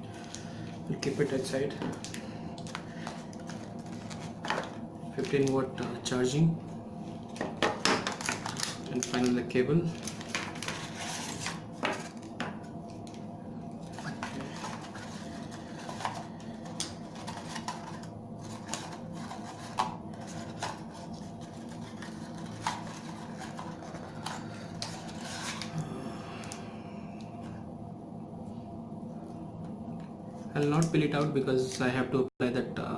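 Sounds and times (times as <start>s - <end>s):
steady background hum: 0.0s - 32.9s
handling plastic and cardboard: 1.0s - 5.9s.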